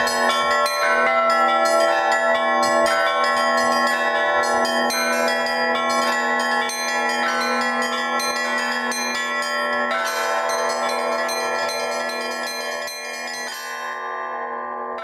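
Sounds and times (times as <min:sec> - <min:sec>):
large bells ringing: 0:00.0 - 0:15.0
small church bells struck quickly: 0:00.0 - 0:15.0.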